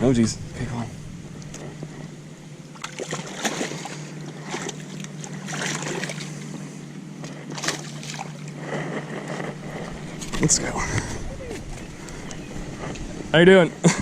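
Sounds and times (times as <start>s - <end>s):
steady low hum: 0.0s - 14.0s
water splashing: 2.5s - 8.7s.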